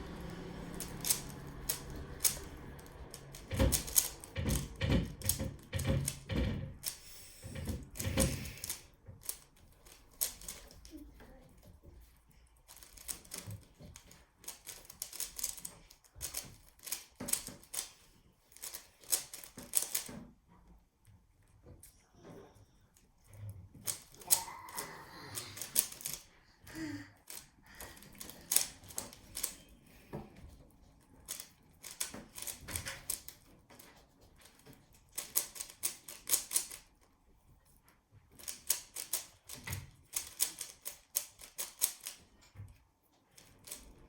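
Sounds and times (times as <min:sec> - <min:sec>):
puzzle cube layers clicking: 0:00.0 - 0:10.8, 0:12.7 - 0:20.2, 0:34.5 - 0:36.9, 0:38.4 - 0:42.2.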